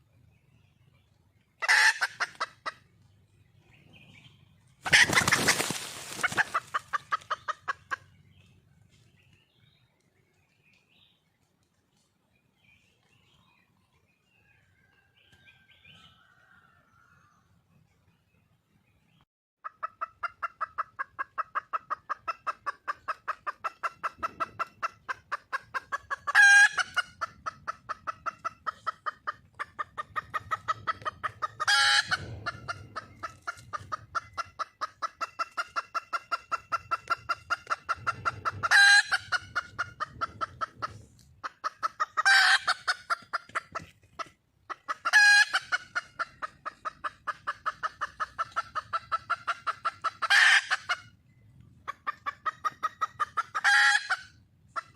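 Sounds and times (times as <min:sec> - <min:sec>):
hen clucking: 0:00.9 - 0:09.3, 0:19.6 - 0:54.9
loud sharp hen call: 0:31.6 - 0:32.8, 0:45.0 - 0:45.7, 0:53.3 - 0:54.3.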